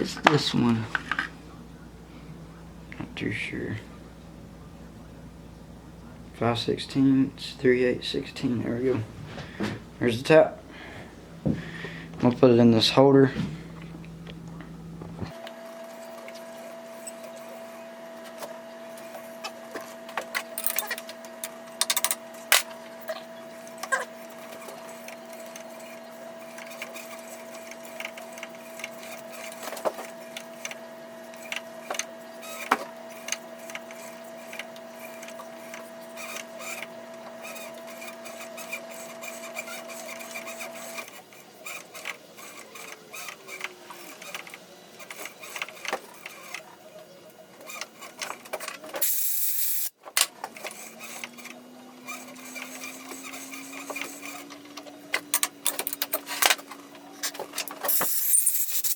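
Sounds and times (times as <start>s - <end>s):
machine motor humming: 0.0s - 49.2s
metal parts clicking and knocking: 20.4s - 21.1s, 21.8s - 22.7s, 55.1s - 56.6s.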